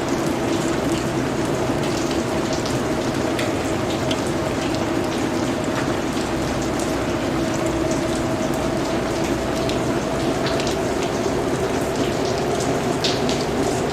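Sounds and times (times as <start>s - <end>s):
heavy rain hissing: 6.3s - 13.9s.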